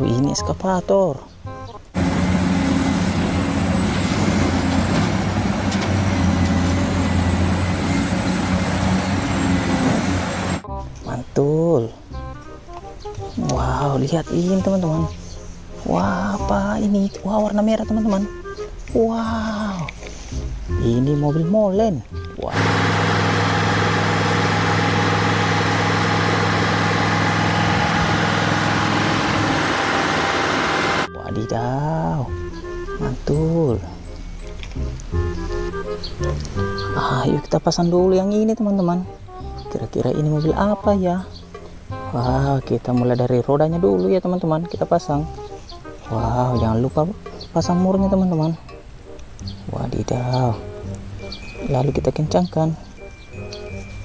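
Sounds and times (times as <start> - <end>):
heavy vehicle engine rumbling: 1.9 - 10.8, 22.3 - 31.1.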